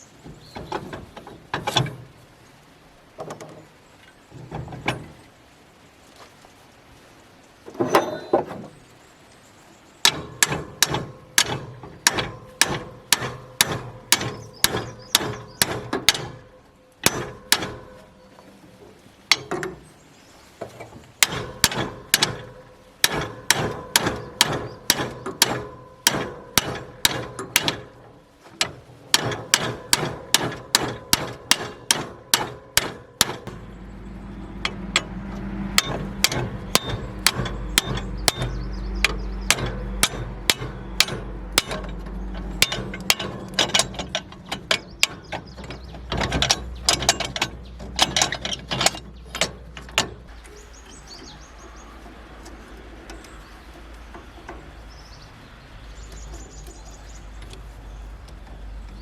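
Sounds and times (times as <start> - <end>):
low steady hum: 0.0 - 59.0
hammer striking metal: 10.0 - 18.0, 21.2 - 28.0, 28.6 - 33.8, 34.6 - 50.2.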